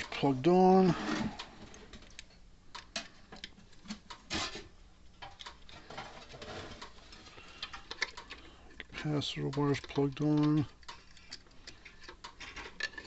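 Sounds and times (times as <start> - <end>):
connectors clicking onto terminals: 6.8 - 13.0.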